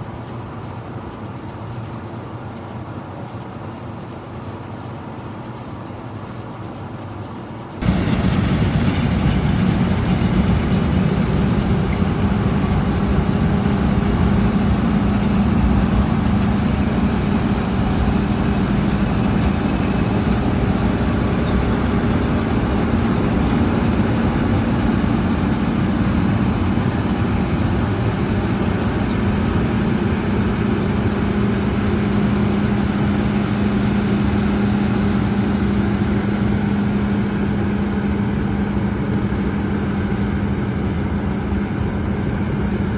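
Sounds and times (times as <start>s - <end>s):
combine harvester running: 0.0s - 42.9s.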